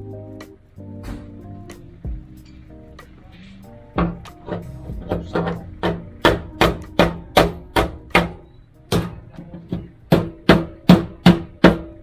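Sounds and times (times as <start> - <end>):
hammer blows on metal: 3.0 - 12.0.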